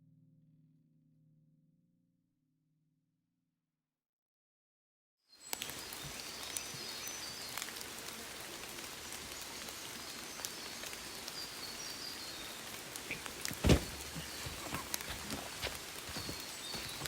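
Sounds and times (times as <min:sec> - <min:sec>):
rain falling in forest: 0:05.3 - 0:17.0.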